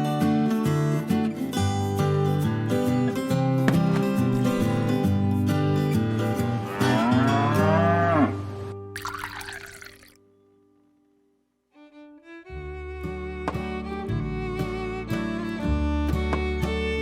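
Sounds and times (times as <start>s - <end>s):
background music: 0.0s - 10.1s, 11.8s - 17.0s
cow mooing: 6.6s - 8.5s.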